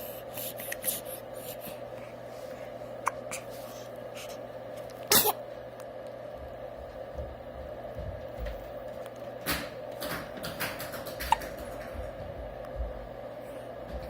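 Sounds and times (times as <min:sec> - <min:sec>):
person sneezing: 0:05.1 - 0:05.4.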